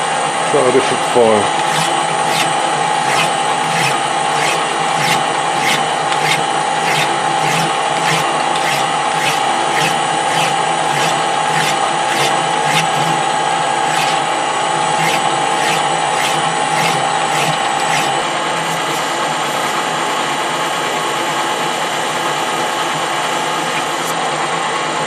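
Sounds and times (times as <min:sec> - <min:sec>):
steady motor whine: 0:00.0 - 0:25.0
hand file stroking metal: 0:01.5 - 0:20.2, 0:23.3 - 0:24.2.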